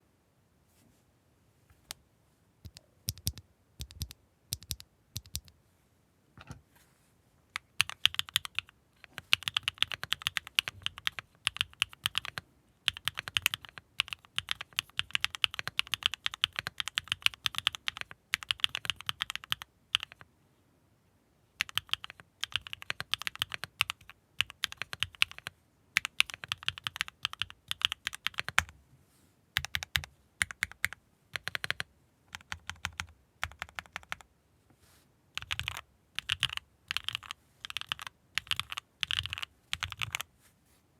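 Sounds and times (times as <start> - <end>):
typing on mechanical keyboard: 2.7 - 5.5, 7.6 - 20.2, 21.6 - 28.7, 29.6 - 34.3, 35.4 - 40.2.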